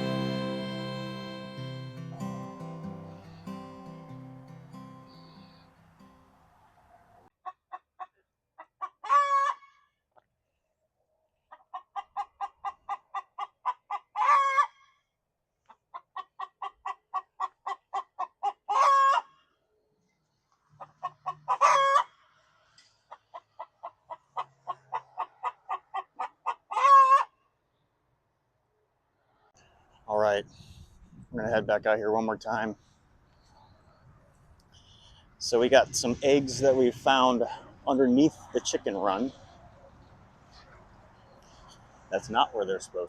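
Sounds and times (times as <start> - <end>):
hen cackling: 0.0 - 3.7, 8.8 - 9.7, 11.5 - 14.8, 15.9 - 19.3, 20.8 - 22.1, 23.1 - 27.4.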